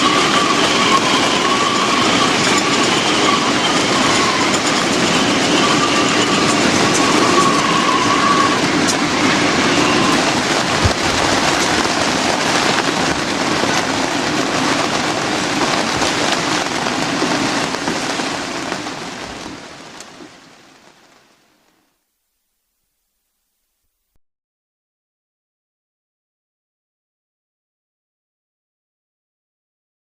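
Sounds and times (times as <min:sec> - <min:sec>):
gale-force wind: 0:00.0 - 0:21.6
heavy rain: 0:00.0 - 0:22.0
sharp raindrop hits: 0:10.1 - 0:20.4.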